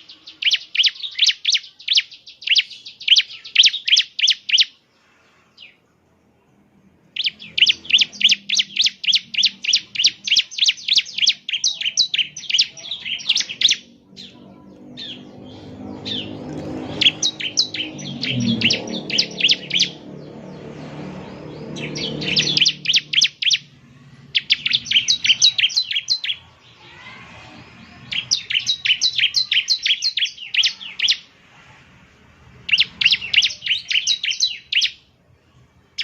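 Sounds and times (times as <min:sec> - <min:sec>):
bird singing high repeated notes: 0:07.2 - 0:27.1, 0:32.7 - 0:35.0
low rumbling noise: 0:13.8 - 0:28.5.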